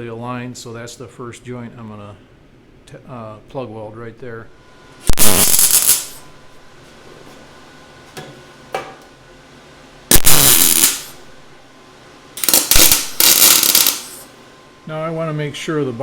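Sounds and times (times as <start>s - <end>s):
welder burst: 5.1s - 6.3s, 10.1s - 11.3s, 12.4s - 14.3s.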